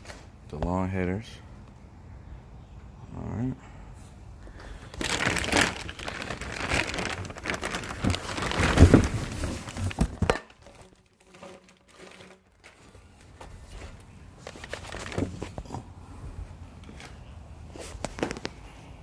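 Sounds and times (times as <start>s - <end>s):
wrapping crinkling and rustling: 4.6s - 15.8s.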